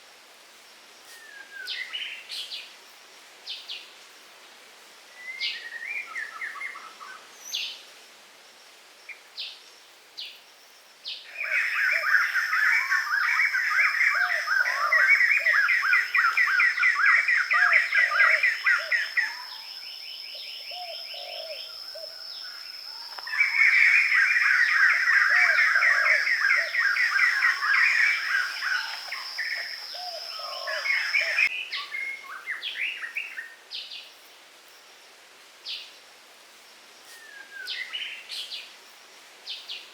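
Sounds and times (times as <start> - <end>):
birds chirping: 11.2 - 33.5.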